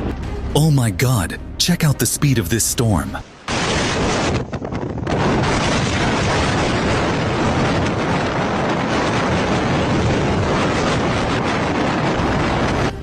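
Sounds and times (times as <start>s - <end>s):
strong wind on microphone: 3.5s - 13.0s.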